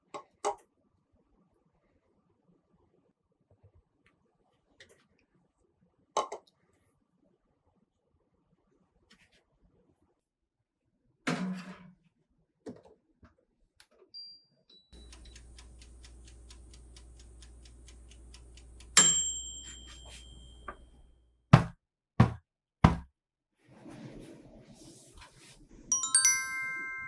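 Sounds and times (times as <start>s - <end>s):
appliance beeping: 14.9s - 16.3s, 18.5s - 20.8s
fast even ticking: 15.0s - 19.0s
appliance humming: 15.0s - 19.4s
sharp knocks: 21.6s - 23.1s.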